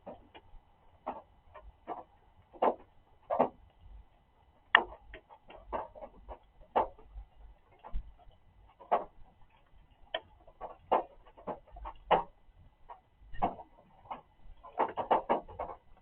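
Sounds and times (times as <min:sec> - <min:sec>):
rain drips knocking on objects: 0:04.6 - 0:16.0.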